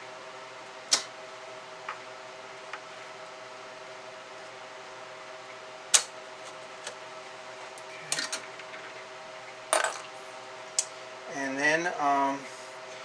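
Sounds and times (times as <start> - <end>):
faint steady hum: 0.0 - 13.0
small clicks of board clips: 0.9 - 1.1.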